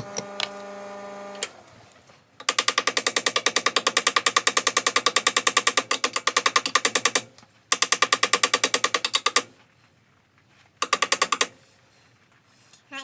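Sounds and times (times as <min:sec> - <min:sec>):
electric welder arc pulsing: 0:00.0 - 0:01.5.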